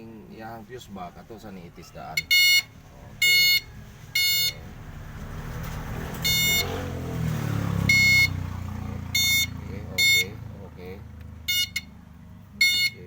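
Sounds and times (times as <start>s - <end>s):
circuit tester beeping: 2.1s - 4.7s, 6.2s - 7.0s, 7.8s - 8.5s, 9.1s - 10.5s, 11.4s - 12.0s, 12.6s - 13.0s.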